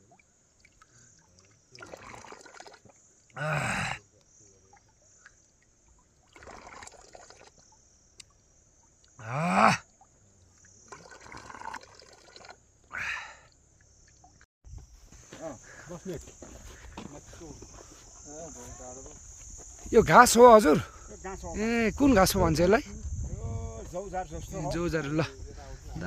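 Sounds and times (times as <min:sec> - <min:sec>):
water splashing and trickling: 0:00.0 - 0:22.4
person gasping: 0:12.9 - 0:13.4.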